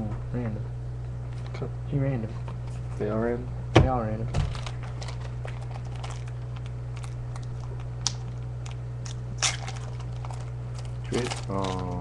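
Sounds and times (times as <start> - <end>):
low electrical hum: 0.0 - 12.0
foil wrappers crinkling: 4.4 - 12.0.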